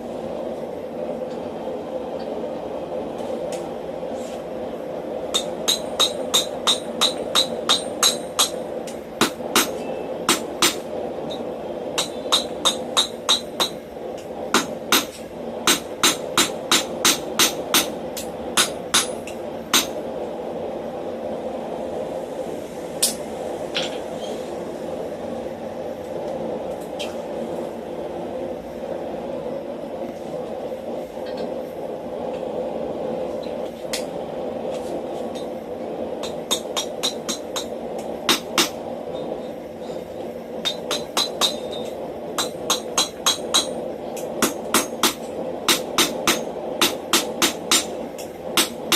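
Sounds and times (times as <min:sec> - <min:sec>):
steady hum: 0:00.0 - 0:48.9
hammer striking steel on anvil: 0:05.3 - 0:08.6, 0:09.2 - 0:11.4, 0:12.0 - 0:13.8, 0:14.5 - 0:20.0, 0:36.2 - 0:38.8, 0:40.6 - 0:48.8.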